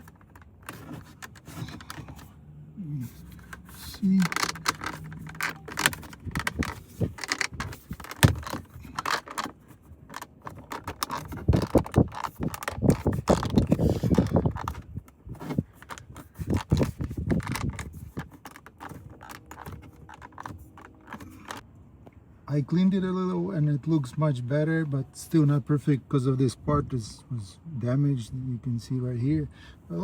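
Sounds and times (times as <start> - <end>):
plastic trim clicks and scrapes: 0.0 - 2.3, 3.0 - 21.6.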